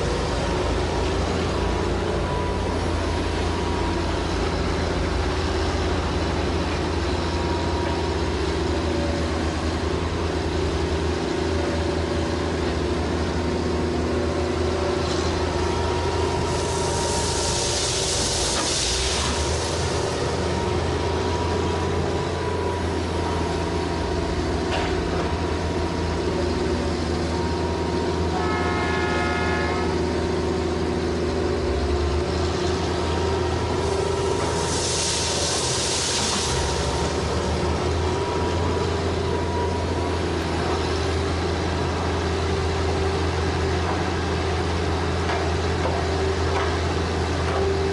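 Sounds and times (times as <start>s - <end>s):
excavator diesel engine running: 0.0s - 47.9s
rushing hiss: 15.3s - 24.0s, 32.2s - 47.9s
short horn-like tone: 28.3s - 30.1s.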